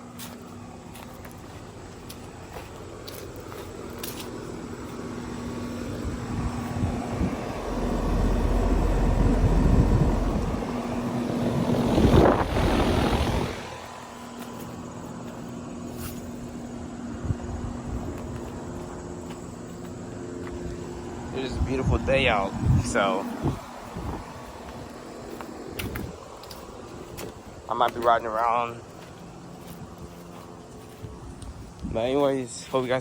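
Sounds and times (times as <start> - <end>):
air conditioner unit humming: 0.0 - 33.0
loud rushing swell: 6.4 - 14.2.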